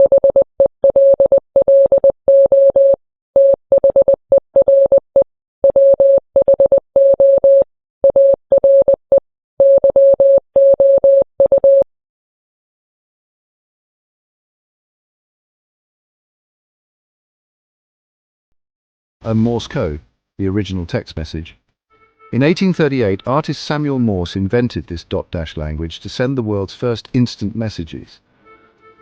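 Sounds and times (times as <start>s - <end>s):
morse code beeps: 0.0s - 5.0s, 5.6s - 11.9s.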